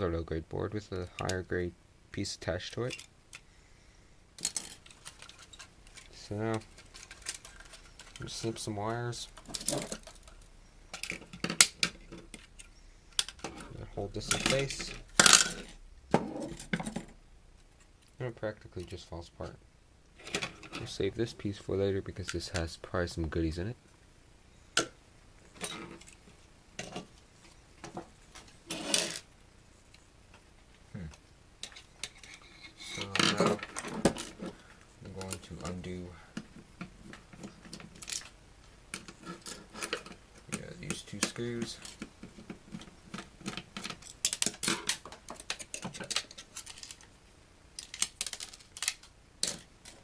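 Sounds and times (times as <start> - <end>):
plastic and metal clattering: 4.4 - 8.6, 9.3 - 12.5, 31.6 - 34.6, 39.0 - 47.1.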